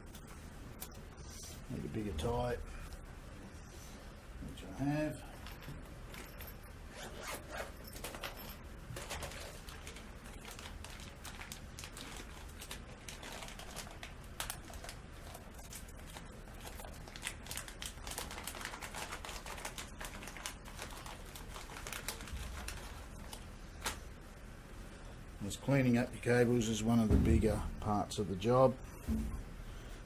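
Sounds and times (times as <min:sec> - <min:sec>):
cable ties clicking and rustling: 0:05.3 - 0:24.0.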